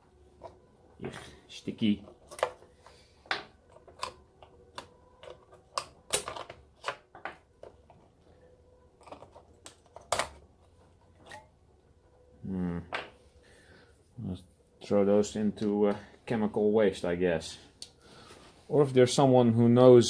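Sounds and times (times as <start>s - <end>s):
batteries and plastic clicking: 2.0s - 8.1s, 8.9s - 11.5s.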